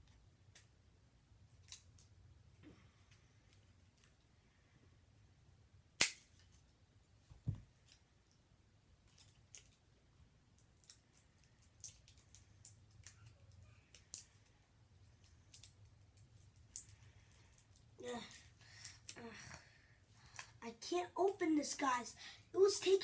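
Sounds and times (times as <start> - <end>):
plastic packaging snap: 6.0 - 6.4
plastic clicks and crackles: 9.0 - 9.8, 10.5 - 19.2.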